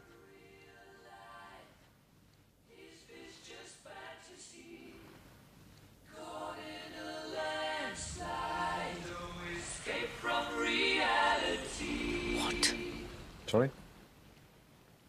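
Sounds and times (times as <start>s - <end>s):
voices singing in harmony: 0.0s - 1.8s, 2.7s - 5.2s, 6.1s - 13.4s.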